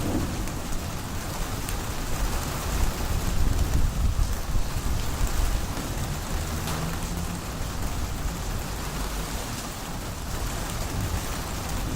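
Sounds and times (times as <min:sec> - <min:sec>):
low thunder rumble: 0:00.0 - 0:05.7
heavy rain pouring: 0:00.0 - 0:11.9.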